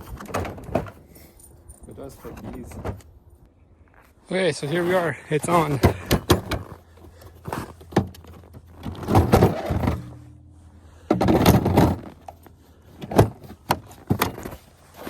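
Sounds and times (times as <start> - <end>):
rattling and knocking: 5.6 - 10.4, 11.0 - 15.0.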